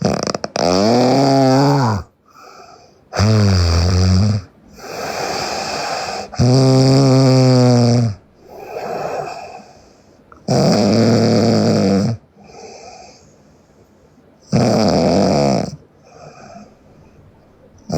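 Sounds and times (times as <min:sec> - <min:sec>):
woman snoring loudly: 0:00.0 - 0:02.1, 0:03.1 - 0:09.7, 0:10.5 - 0:12.8, 0:14.5 - 0:15.8
soft breaths: 0:01.8 - 0:03.4, 0:04.5 - 0:06.5, 0:07.6 - 0:10.5, 0:12.2 - 0:14.5, 0:15.8 - 0:17.9.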